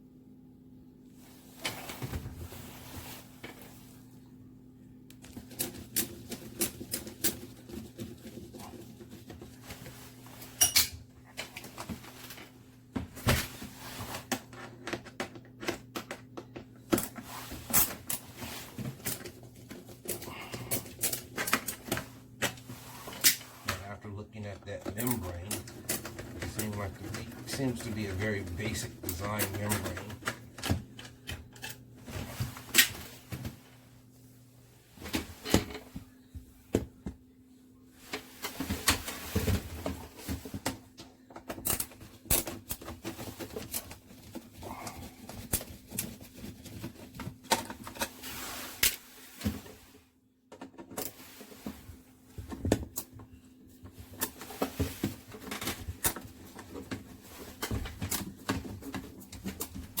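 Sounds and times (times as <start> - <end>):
faint steady hum: 0.0 - 60.0.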